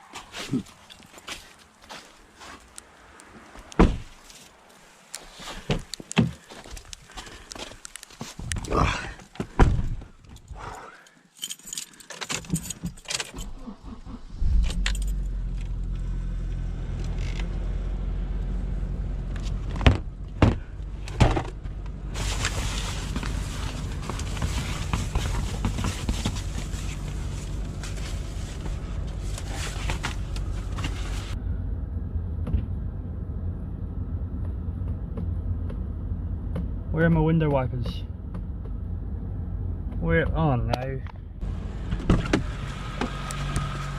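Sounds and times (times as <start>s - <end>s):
keys jangling: 11.2s - 13.6s
car engine starting and idling: 12.5s - 43.9s.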